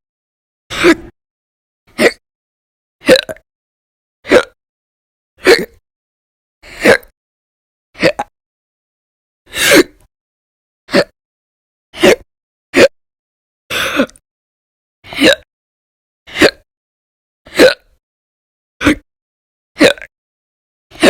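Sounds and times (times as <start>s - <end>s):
woman hiccuping: 3.0s - 3.4s, 4.3s - 4.6s, 5.4s - 5.8s, 8.0s - 8.3s, 15.1s - 15.5s, 17.5s - 17.9s, 19.8s - 20.1s.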